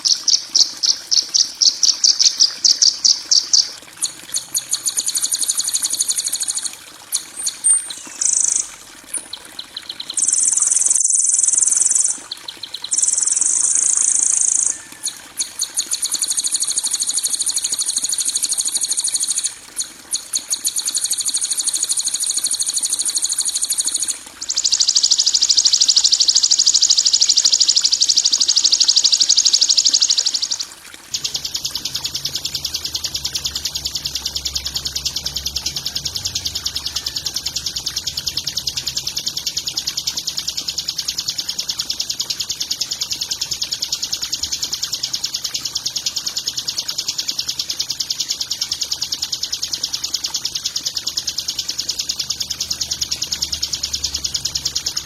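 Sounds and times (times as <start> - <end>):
bird trills and buzzes: 0.0 - 19.5, 20.1 - 38.5.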